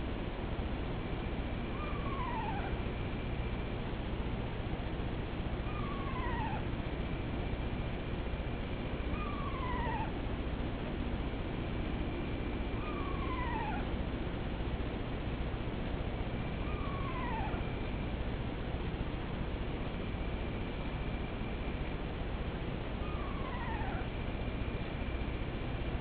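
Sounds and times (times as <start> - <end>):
animal calling: 1.6 - 3.1, 5.6 - 7.1, 9.0 - 10.4, 12.2 - 14.0, 16.5 - 18.0, 23.0 - 24.7.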